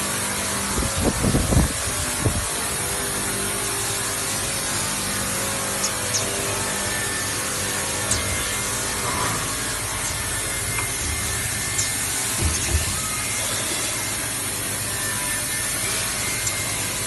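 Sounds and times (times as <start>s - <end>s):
grinding on metal: 4.1s - 17.0s
machinery clicks: 8.0s - 14.2s
machinery knocks: 12.3s - 13.2s.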